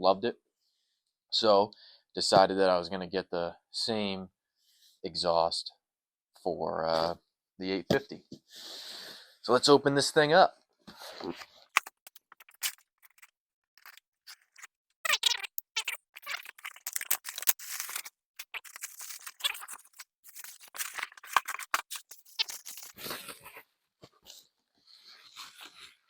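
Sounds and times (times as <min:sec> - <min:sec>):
tape cut and torn: 0:11.7 - 0:23.6
cardboard and packing rustling: 0:16.6 - 0:23.7.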